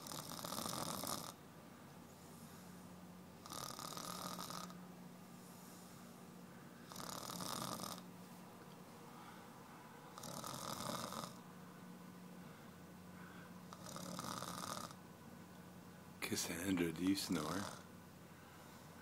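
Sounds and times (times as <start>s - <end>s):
woman snoring: 0.0s - 1.4s, 3.4s - 4.8s, 6.9s - 8.0s, 10.1s - 11.4s, 13.7s - 15.0s
quiet breathing: 1.6s - 11.5s, 12.2s - 15.0s, 17.4s - 19.0s.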